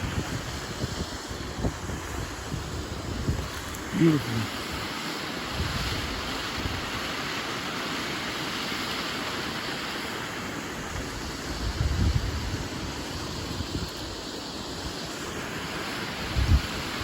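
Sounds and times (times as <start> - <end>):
wind buffeting microphone: 0.0 - 4.3, 10.9 - 14.2, 16.2 - 17.0
waterfall rushing: 0.0 - 17.0.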